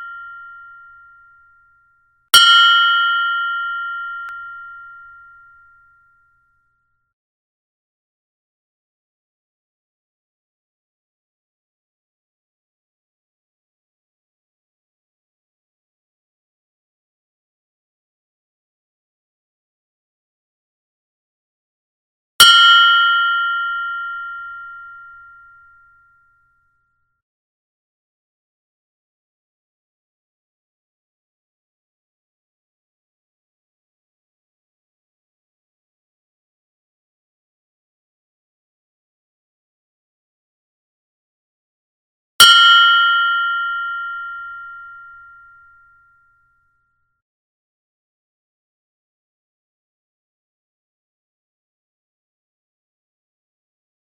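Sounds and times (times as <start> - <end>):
meditation bell ringing: 0.0 - 6.9, 22.4 - 26.4, 42.4 - 46.6.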